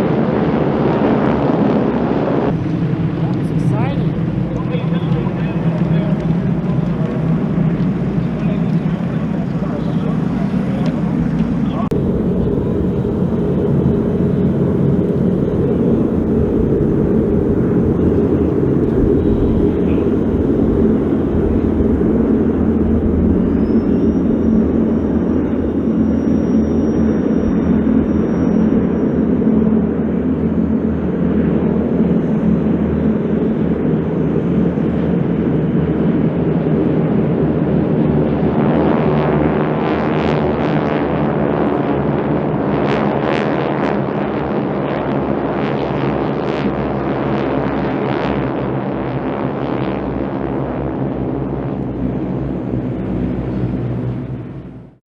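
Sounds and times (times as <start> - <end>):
radial aircraft engines droning: 0.0 - 55.0
wind gusts: 2.5 - 27.9.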